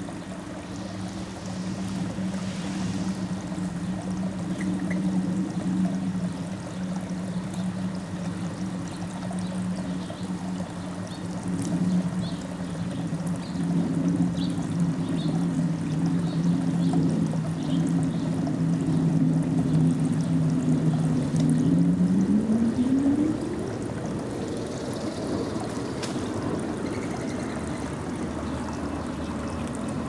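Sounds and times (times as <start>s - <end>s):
loud low drone: 0.0s - 30.0s
small birds chirping: 11.9s - 13.7s.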